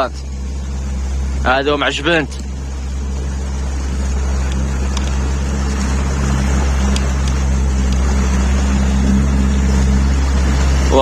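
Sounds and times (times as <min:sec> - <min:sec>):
motorboat engine humming: 0:00.0 - 0:11.0
water rushing: 0:00.0 - 0:11.0
wind: 0:00.0 - 0:11.0.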